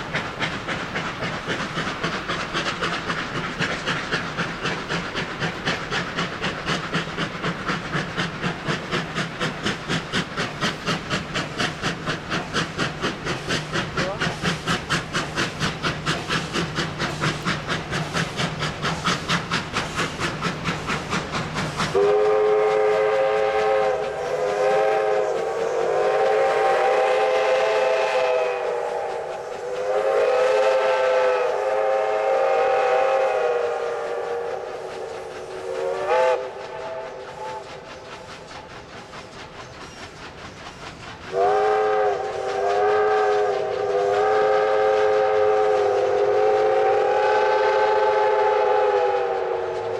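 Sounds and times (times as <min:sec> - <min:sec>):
steam locomotive exhaust beats: 0:00.0 - 0:49.9
steam whistles: 0:13.5 - 0:38.5, 0:41.2 - 0:49.9.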